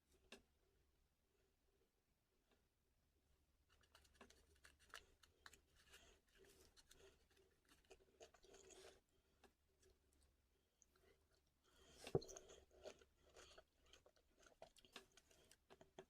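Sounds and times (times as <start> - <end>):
food handling crackles: 3.7 - 9.0.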